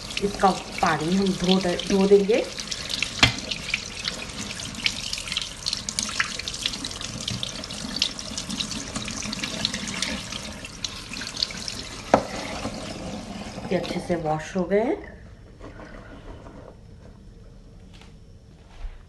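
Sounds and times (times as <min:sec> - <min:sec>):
tap water running in sink: 0:00.0 - 0:14.3.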